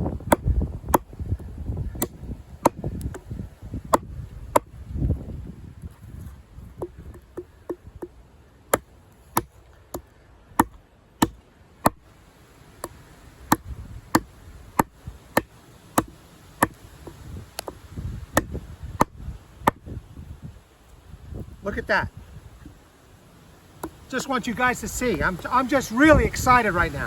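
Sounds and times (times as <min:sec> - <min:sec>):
blade chopping into log: 0:00.2 - 0:01.2, 0:01.9 - 0:04.7, 0:08.7 - 0:12.0, 0:12.8 - 0:19.9.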